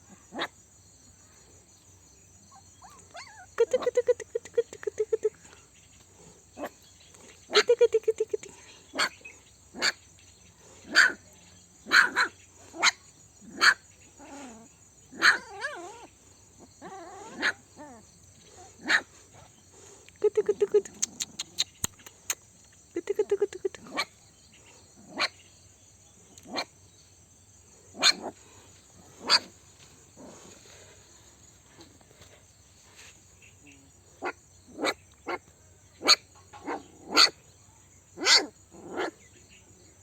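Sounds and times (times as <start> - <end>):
puppies whimpering and squealing: 2.8 - 5.2.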